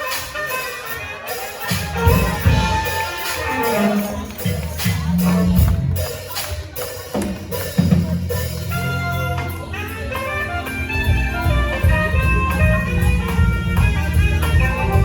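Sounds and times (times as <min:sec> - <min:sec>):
band music: 0:00.0 - 0:15.0.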